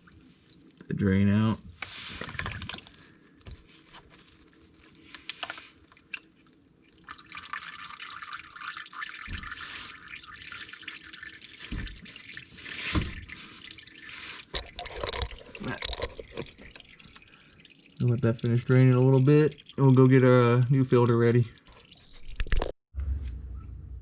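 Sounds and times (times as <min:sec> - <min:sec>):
oil dripping into a pan: 0:05.8 - 0:22.6
dull knocks: 0:09.3 - 0:09.6.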